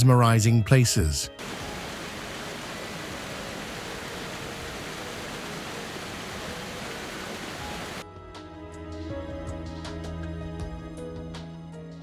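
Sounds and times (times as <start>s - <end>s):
steady rushing noise: 1.4s - 8.0s.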